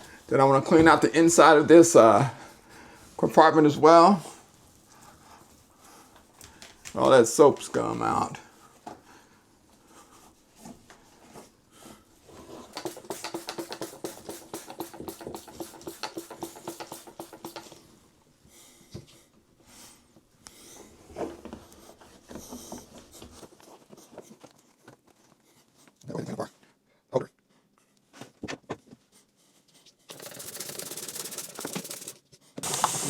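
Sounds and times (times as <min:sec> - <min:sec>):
scrubbing inside soap dispenser: 0:12.4 - 0:17.8, 0:30.1 - 0:33.0.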